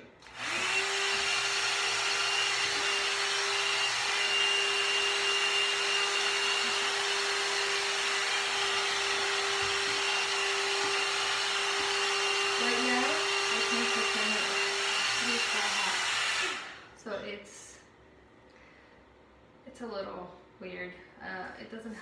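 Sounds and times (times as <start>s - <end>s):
hair dryer motor whine: 0.0s - 17.0s.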